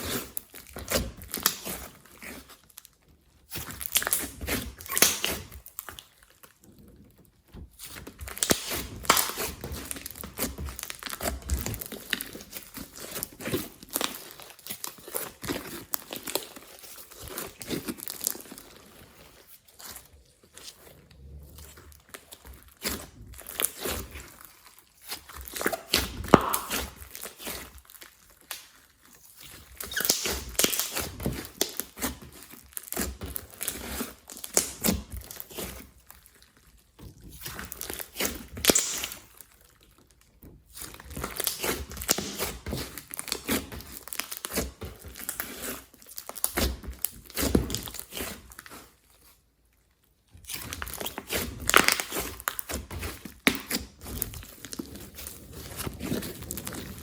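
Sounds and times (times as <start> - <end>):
slime squishing and crackling: 0.0 - 57.0.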